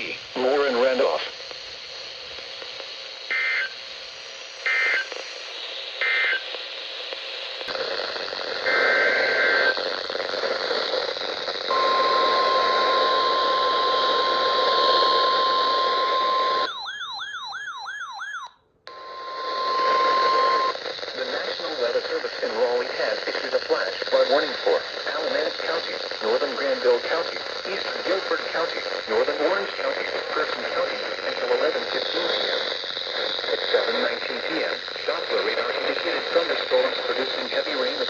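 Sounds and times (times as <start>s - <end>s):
receiver hiss: 0.0s - 16.7s, 18.9s - 38.0s
data bursts: 11.7s - 16.9s, 18.9s - 21.8s
steady warning alarm tone: 11.7s - 20.7s.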